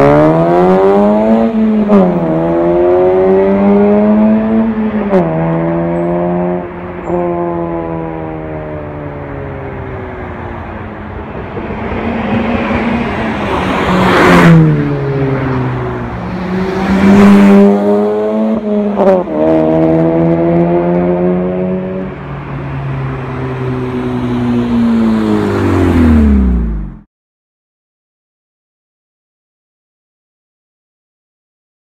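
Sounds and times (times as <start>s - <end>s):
car exhaust revving: 11.5s - 27.0s.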